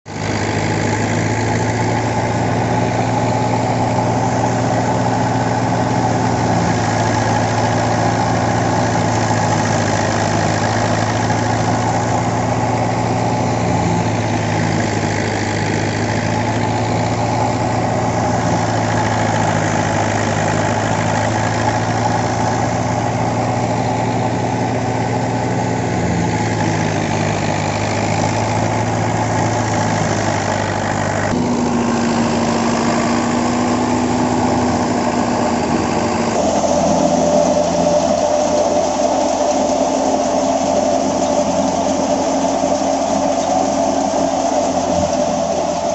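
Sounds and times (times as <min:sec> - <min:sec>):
tractor engine running steadily: 0:00.0 - 0:45.9.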